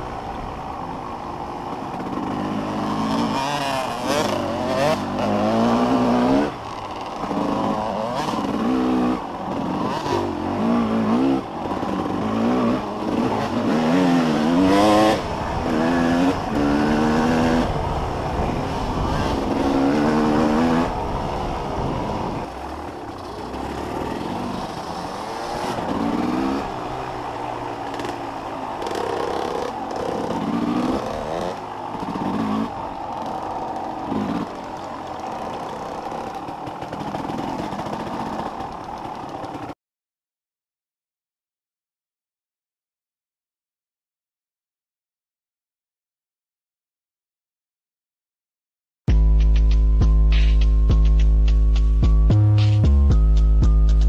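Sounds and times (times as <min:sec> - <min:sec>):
dirt bike engine revving: 0:00.0 - 0:39.7.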